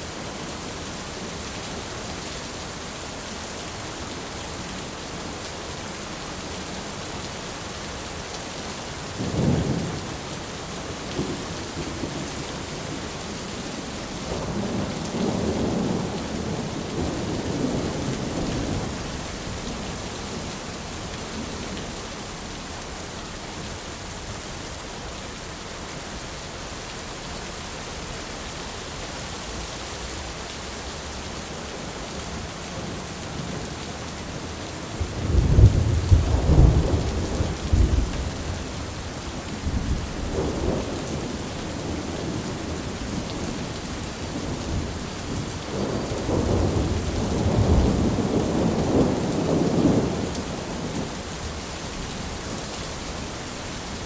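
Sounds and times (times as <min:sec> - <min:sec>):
heavy rain: 0:00.0 - 0:54.0
thunder crack and rumble: 0:35.0 - 0:38.8, 0:44.5 - 0:51.0.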